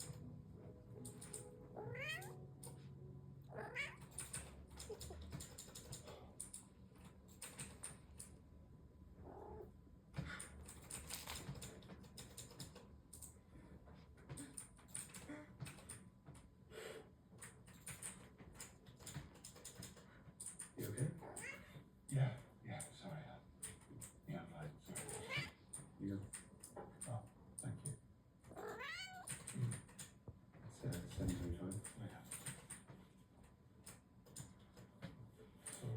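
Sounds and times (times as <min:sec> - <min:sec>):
kitten meowing faintly: 0:01.8 - 0:02.4, 0:03.5 - 0:04.1, 0:25.1 - 0:25.6, 0:28.5 - 0:29.3
small clicks and taps: 0:10.2 - 0:16.5, 0:29.2 - 0:35.9.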